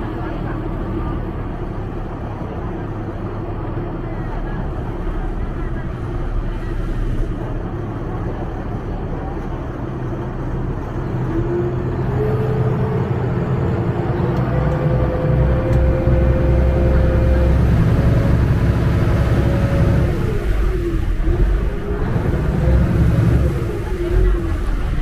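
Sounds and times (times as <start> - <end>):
boat engine rumbling: 0.0 - 25.0
steady whine: 1.7 - 7.8, 13.2 - 25.0.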